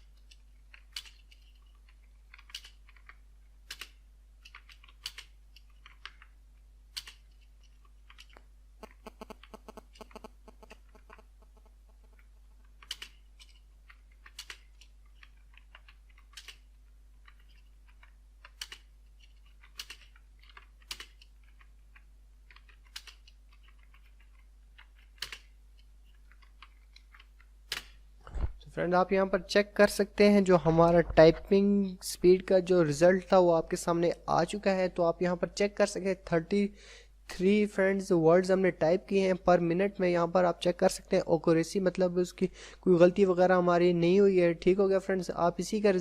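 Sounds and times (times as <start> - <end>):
keyboard keys clicking: 17.2 - 25.5.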